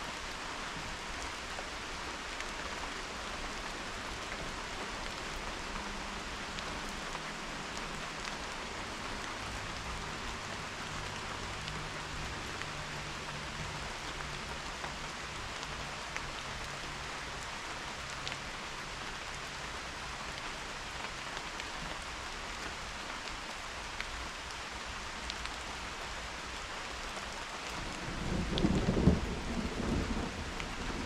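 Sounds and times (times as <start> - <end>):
steady rain: 0.0 - 31.0.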